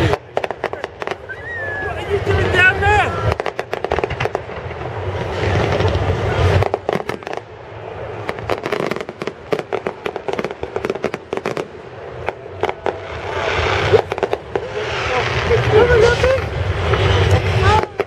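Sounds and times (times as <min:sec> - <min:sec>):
fireworks crackling bangs: 0:00.0 - 0:18.0
deep rumble: 0:11.7 - 0:18.0.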